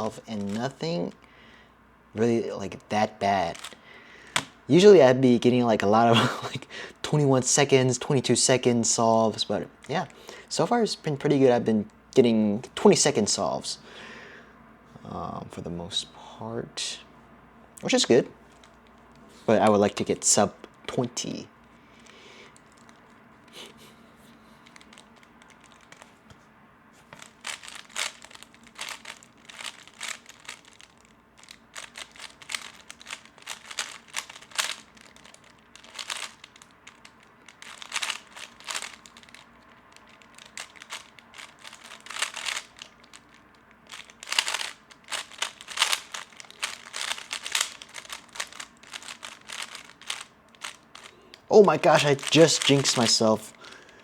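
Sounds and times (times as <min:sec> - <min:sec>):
plastic puzzle cube clicking turns: 0:00.3 - 0:00.7, 0:03.4 - 0:04.6, 0:24.6 - 0:26.1, 0:27.2 - 0:51.1, 0:51.8 - 0:53.5.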